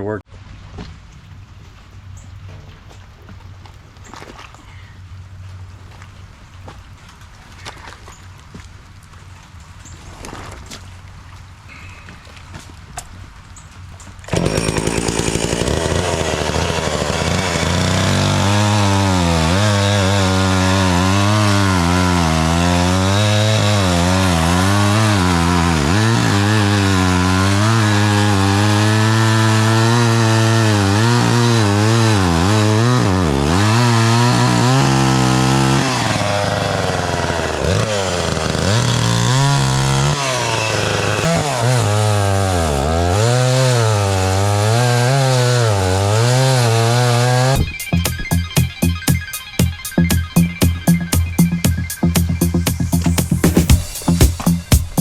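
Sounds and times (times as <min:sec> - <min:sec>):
chainsaw cutting wood: 0:14.3 - 0:49.2, 0:50.1 - 0:55.0.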